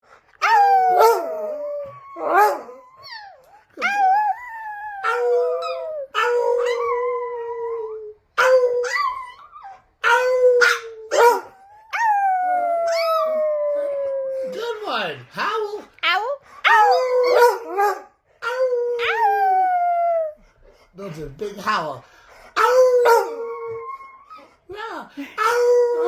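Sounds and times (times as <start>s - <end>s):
small dog howling: 0.4s - 14.5s, 16.7s - 20.4s.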